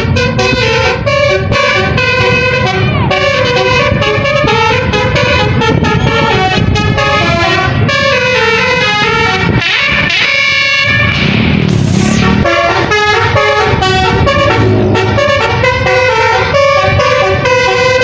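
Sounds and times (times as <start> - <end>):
multi-tone bus horn melody: 0.0 - 18.0
low rumble: 11.0 - 16.6.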